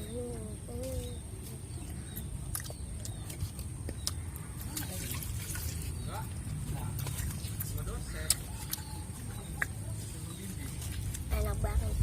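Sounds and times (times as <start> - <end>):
mouth clicks and crunches: 0.0 - 12.0
person chewing food: 0.9 - 10.2.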